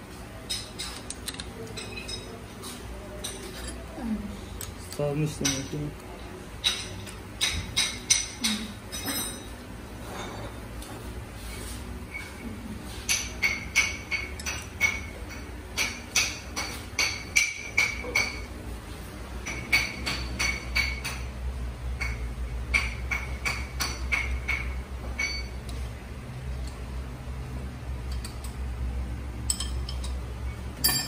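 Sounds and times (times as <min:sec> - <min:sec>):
steady low hum: 0:00.0 - 0:31.0
metal clinking against metal: 0:00.5 - 0:02.4, 0:06.6 - 0:09.5, 0:22.8 - 0:25.6, 0:29.4 - 0:31.0.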